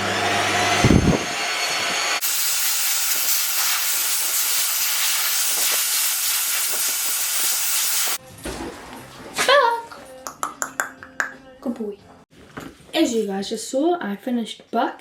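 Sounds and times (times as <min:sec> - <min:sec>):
dryer blowing air: 0:00.0 - 0:08.2.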